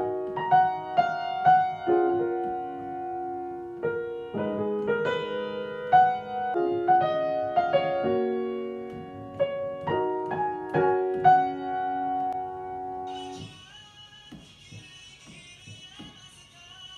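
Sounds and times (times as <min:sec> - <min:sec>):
solo piano melody: 0:00.0 - 0:13.4.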